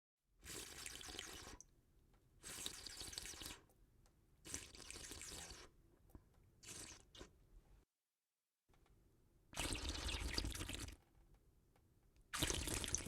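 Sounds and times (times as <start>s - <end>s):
person slurping liquid: 0.4s - 1.6s, 2.4s - 3.7s, 4.5s - 5.8s, 6.6s - 7.4s, 9.6s - 11.0s, 12.3s - 13.0s.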